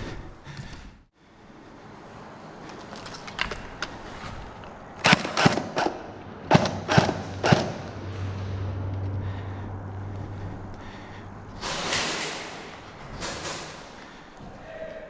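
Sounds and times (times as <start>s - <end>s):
airsoft guns firing sharp cracks: 5.0s - 7.8s.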